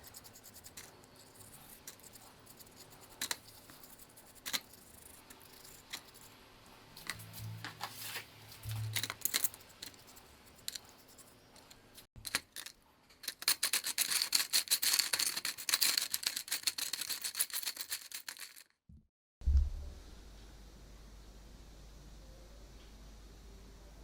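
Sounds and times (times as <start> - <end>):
short thump: 19.4 - 19.9.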